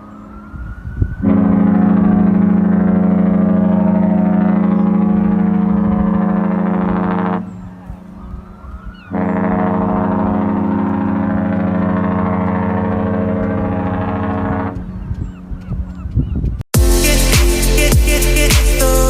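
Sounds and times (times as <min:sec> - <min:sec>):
ship horn blasts: 0:01.2 - 0:15.1.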